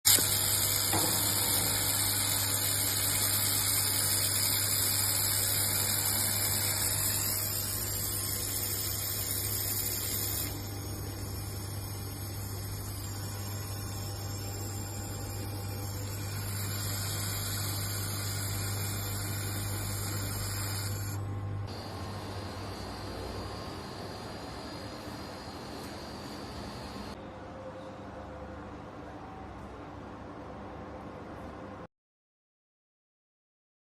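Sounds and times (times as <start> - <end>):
laser welding machine hissing: 0.1 - 27.2.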